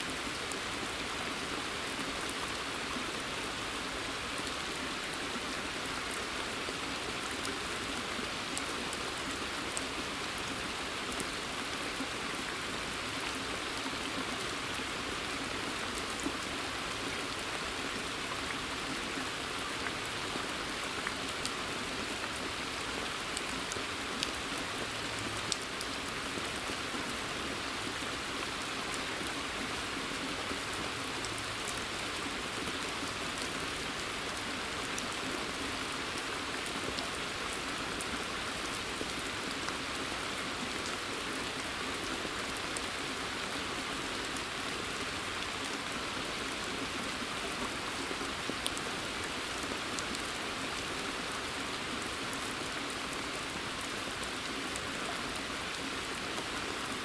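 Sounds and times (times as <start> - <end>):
rain pattering on pond: 0.0 - 57.0.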